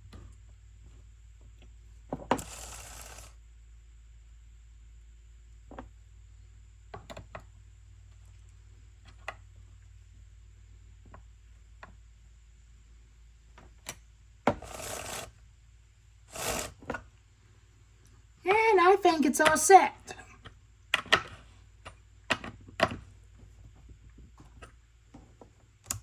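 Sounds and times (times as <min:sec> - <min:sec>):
chain rasping scrapes: 0:14.6 - 0:15.3, 0:16.3 - 0:16.8.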